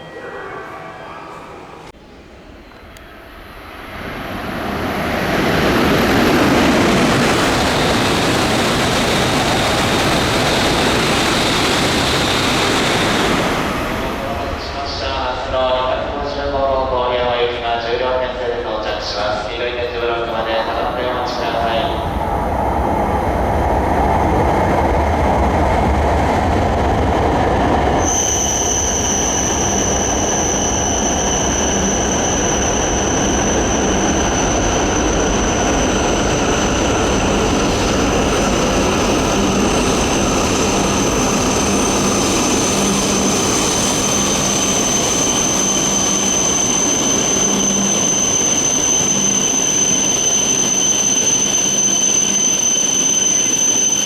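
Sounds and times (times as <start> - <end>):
train running: 0.0 - 54.0
high-pitched squeal: 27.9 - 54.0.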